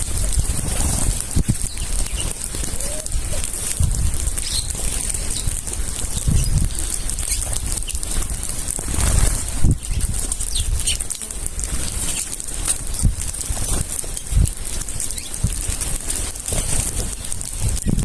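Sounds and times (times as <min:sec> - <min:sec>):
birds flapping wings: 0:00.0 - 0:18.0
steady hiss: 0:00.0 - 0:18.0
bird chirps: 0:01.5 - 0:03.4, 0:04.4 - 0:08.0.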